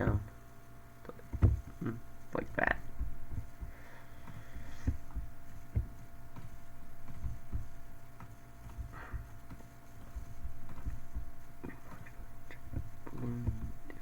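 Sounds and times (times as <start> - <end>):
thin electrical hum: 0.0 - 14.0
soft knocks on desk: 1.3 - 1.8, 3.0 - 14.0.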